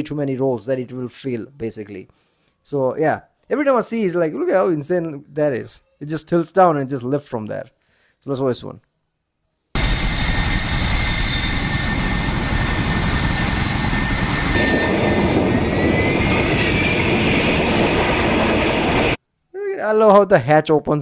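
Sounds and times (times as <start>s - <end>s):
fighter jet engine whining: 9.8s - 19.2s.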